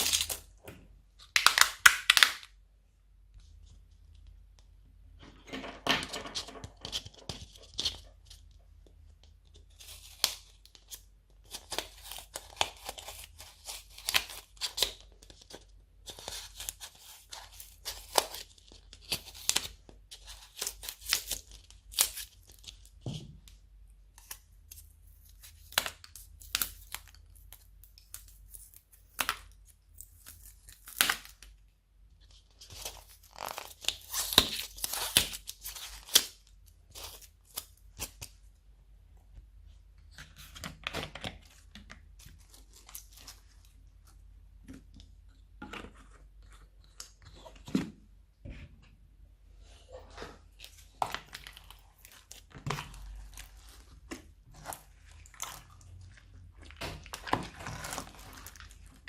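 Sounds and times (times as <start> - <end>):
slime squishing with sticky pops: 50.7 - 59.0.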